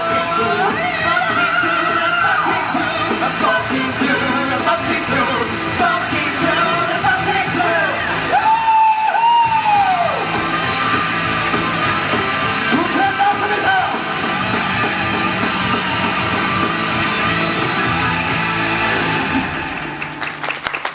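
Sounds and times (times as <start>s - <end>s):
person singing: 0.0s - 10.3s
rock band with electric guitar: 0.0s - 20.9s.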